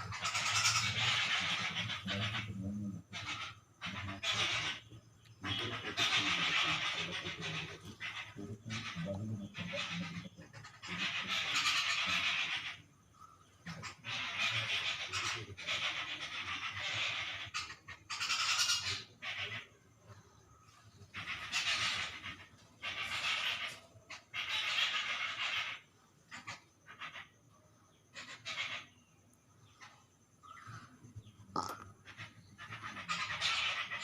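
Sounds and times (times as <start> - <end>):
birds calling harshly: 0.0 - 34.0.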